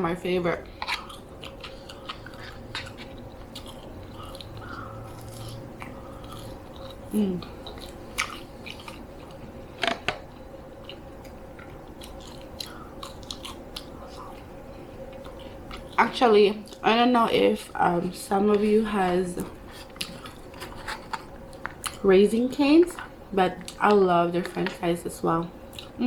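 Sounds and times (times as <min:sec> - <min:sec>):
faint steady hum: 0:00.0 - 0:26.0
person chewing fries: 0:00.6 - 0:16.8, 0:19.4 - 0:22.1, 0:25.6 - 0:26.0
person murmuring mm: 0:07.1 - 0:07.6.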